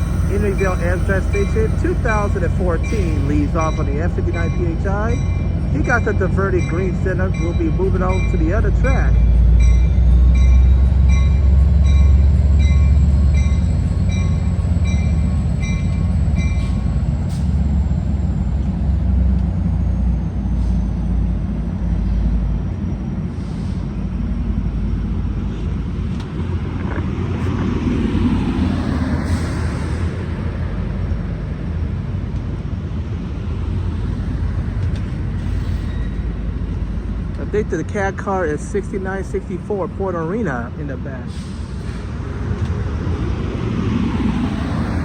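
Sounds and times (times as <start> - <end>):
train wheel squeal: 0.0 - 4.1, 9.2 - 18.8, 34.2 - 36.4
train bell ringing: 0.0 - 17.2
diesel locomotive engine throb: 0.0 - 45.0.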